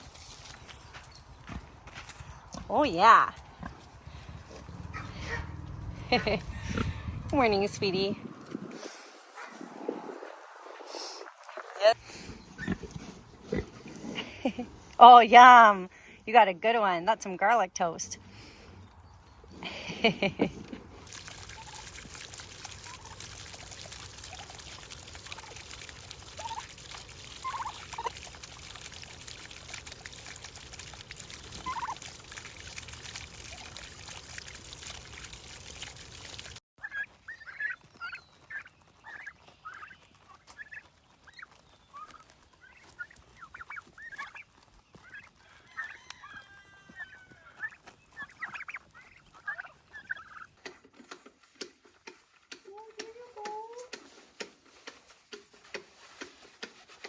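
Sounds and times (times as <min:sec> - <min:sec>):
chickens clucking: 0:03.6 - 0:07.3, 0:27.4 - 0:28.2, 0:31.6 - 0:32.0, 0:36.8 - 0:57.0.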